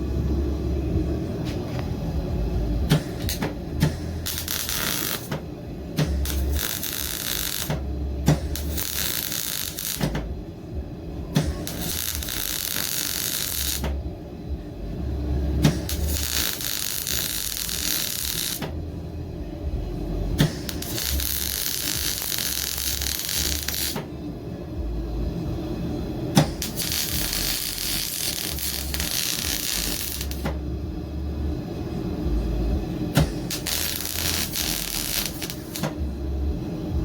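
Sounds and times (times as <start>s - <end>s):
welder arc crackling and hissing: 2.6s - 10.5s, 11.3s - 14.1s, 15.0s - 18.8s, 20.0s - 24.3s, 25.1s - 37.0s
sharp welder click: 2.9s - 5.4s, 6.0s - 10.3s, 15.6s - 18.7s, 26.4s - 30.6s.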